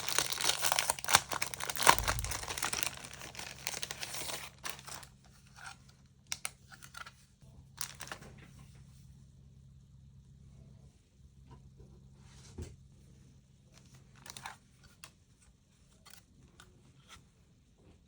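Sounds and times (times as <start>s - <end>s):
packaging crinkling and tearing: 0.0s - 7.1s, 7.8s - 8.2s.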